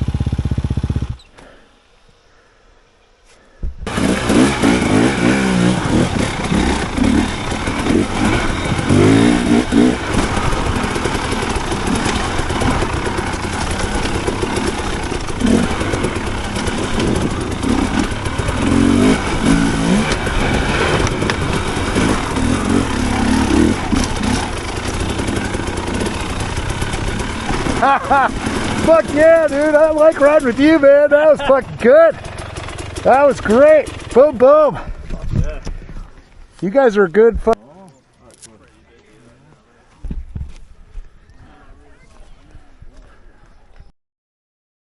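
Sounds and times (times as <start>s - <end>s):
dirt bike engine revving: 0.0s - 1.3s, 3.8s - 34.9s.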